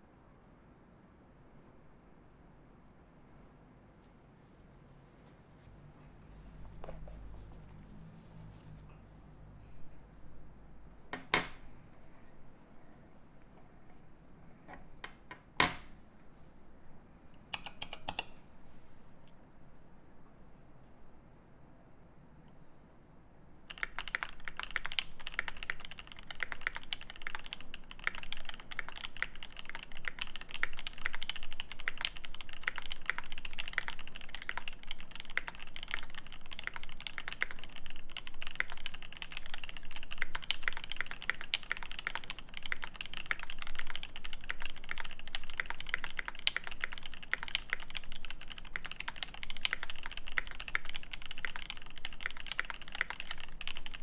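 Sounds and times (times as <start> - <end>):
mechanical keyboard typing: 17.5 - 18.4, 23.7 - 54.0.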